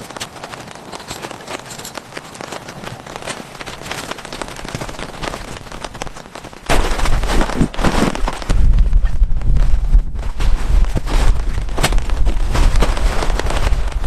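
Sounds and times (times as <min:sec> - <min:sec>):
heavy rain falling: 0:00.0 - 0:14.0
rush of noise with low rumble: 0:03.6 - 0:14.0.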